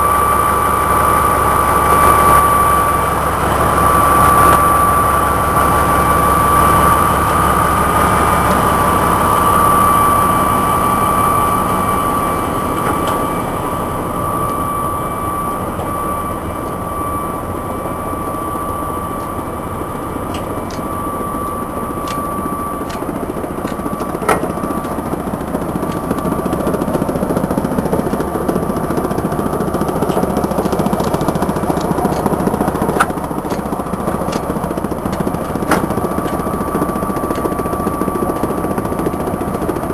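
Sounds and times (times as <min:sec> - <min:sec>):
steady machine whine: 0:00.0 - 0:39.9
tub grinder running: 0:18.9 - 0:39.7.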